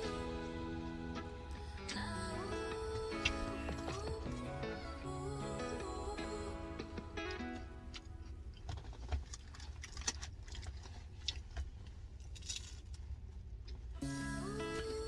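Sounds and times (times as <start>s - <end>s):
steady low rumble: 0.0s - 8.7s
chewing crunches and clicks: 6.9s - 14.0s.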